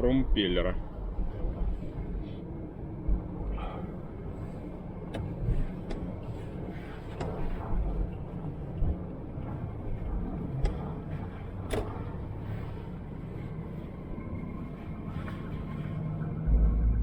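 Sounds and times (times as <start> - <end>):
engine and road rumble in car: 0.0 - 17.0
sharp clicks and knocks: 11.6 - 12.1.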